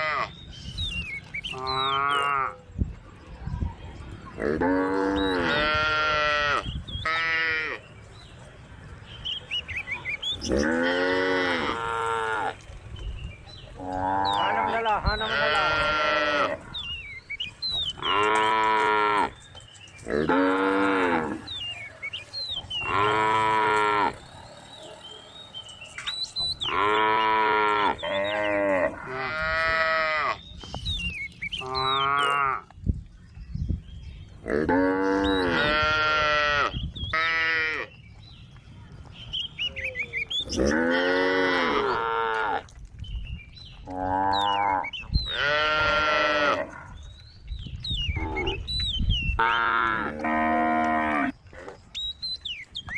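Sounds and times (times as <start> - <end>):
cows mooing: 4.4 - 7.8, 10.4 - 12.6, 13.8 - 16.8, 18.0 - 19.4, 20.1 - 21.5, 22.8 - 24.3, 26.6 - 30.4, 31.6 - 32.7, 34.4 - 37.9, 40.4 - 42.7, 43.8 - 47.0, 49.4 - 51.8.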